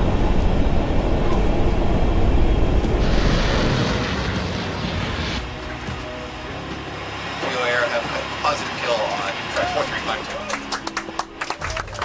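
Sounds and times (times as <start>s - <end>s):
rocket motor rumbling roar: 0.0s - 6.2s
hissing rush: 2.8s - 5.7s.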